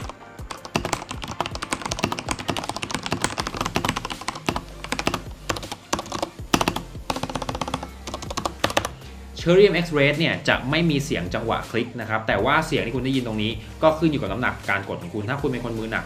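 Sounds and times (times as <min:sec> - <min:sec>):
fast mechanical keyboard typing: 0:00.0 - 0:09.0.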